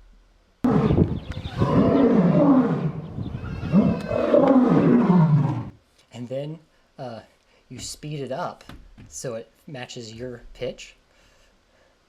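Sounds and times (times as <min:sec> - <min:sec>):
lion roaring: 0:00.6 - 0:05.8.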